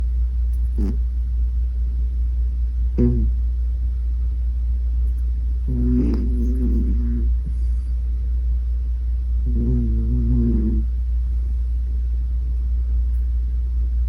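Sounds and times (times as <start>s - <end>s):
cat snoring: 0.7s - 1.0s, 3.0s - 3.3s, 5.7s - 7.8s, 9.4s - 10.9s.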